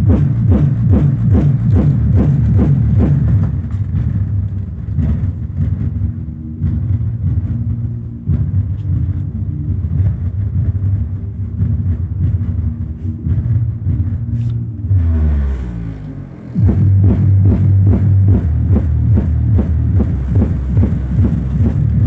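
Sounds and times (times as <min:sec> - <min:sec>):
deep rumbling bass: 0:00.0 - 0:22.0
falling pitch sweep: 0:13.4 - 0:22.0.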